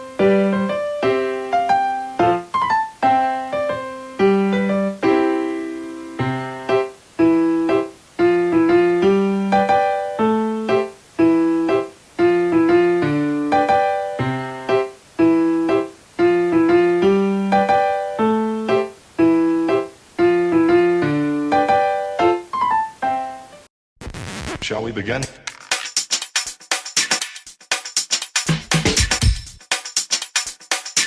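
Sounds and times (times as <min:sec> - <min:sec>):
light piano melody: 0:00.0 - 0:23.7.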